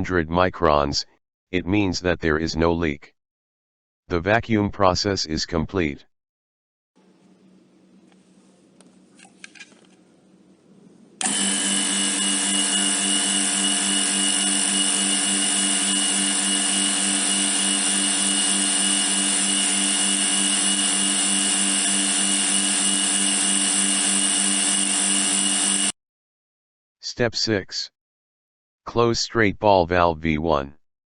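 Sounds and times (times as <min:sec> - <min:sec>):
machine motor hum: 0:11.2 - 0:25.9.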